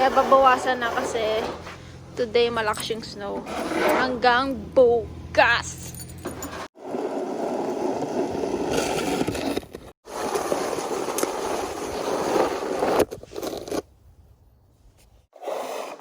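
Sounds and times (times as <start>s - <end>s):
snow shovel scraping pavement: 0.0s - 4.4s, 6.5s - 13.8s, 15.4s - 16.0s.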